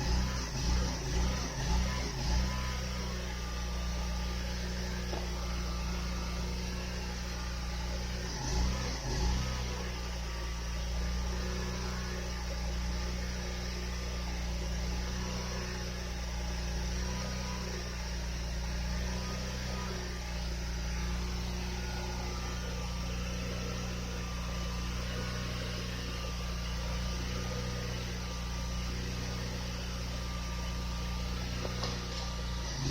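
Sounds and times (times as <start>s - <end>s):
steady low hum: 0.0s - 32.9s.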